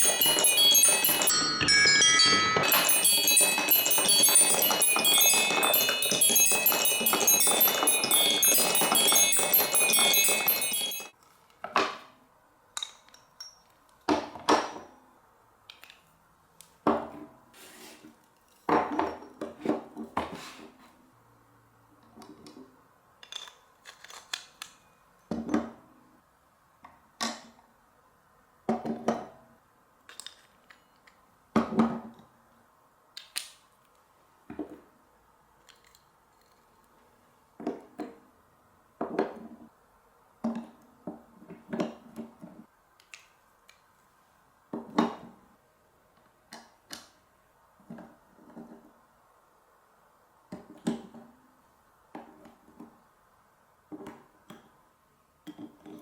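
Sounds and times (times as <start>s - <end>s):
marbles clacking against blocks: 0.0s - 11.1s
marbles clinking down marble run: 0.0s - 11.1s.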